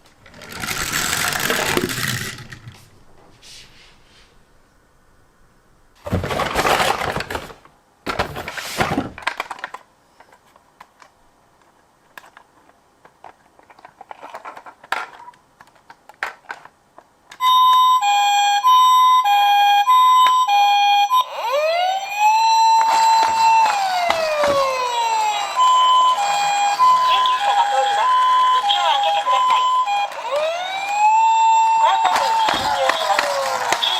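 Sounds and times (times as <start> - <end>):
toy electronic siren: 17.4 - 33.9.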